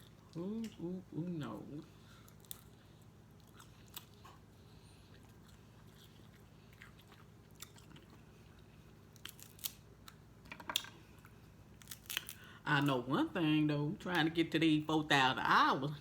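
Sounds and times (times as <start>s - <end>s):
chewing: 2.0s - 10.2s.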